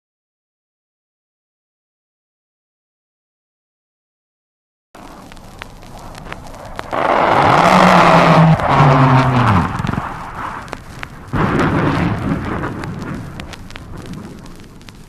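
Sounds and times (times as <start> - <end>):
vinyl record crackle: 5.0 - 15.0
rushing roar with falling tone: 5.9 - 12.9.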